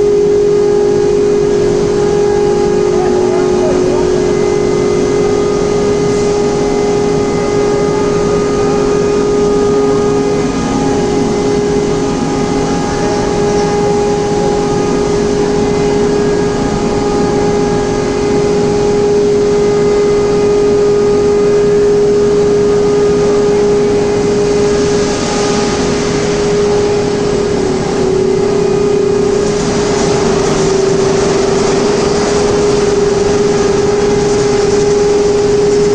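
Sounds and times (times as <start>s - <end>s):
loud steady industrial hum: 0.0s - 35.9s
broad rushing noise: 22.9s - 35.9s.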